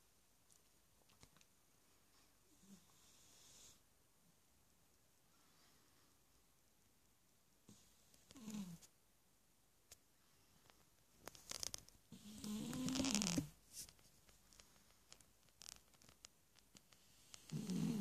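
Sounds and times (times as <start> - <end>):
breathy hiss: 2.0 - 3.9
cat snoring: 2.6 - 3.8, 7.7 - 8.8, 12.1 - 13.5, 17.0 - 18.0.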